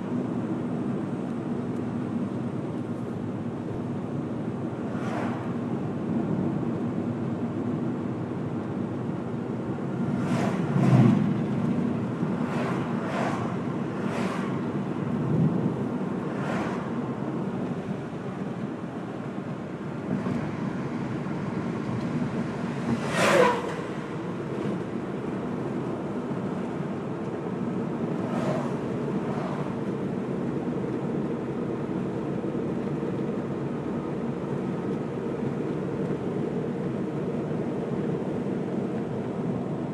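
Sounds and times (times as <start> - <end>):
car road noise drone: 0.0 - 39.9
passing vehicle whooshes: 4.7 - 6.4, 9.8 - 19.1, 19.9 - 30.1.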